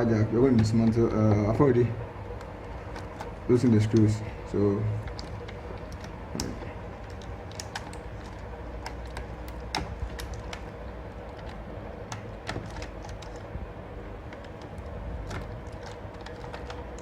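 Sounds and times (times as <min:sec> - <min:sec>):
low steady hum: 0:00.0 - 0:17.0
laptop parts clicking and tapping: 0:05.0 - 0:13.6, 0:14.2 - 0:17.0.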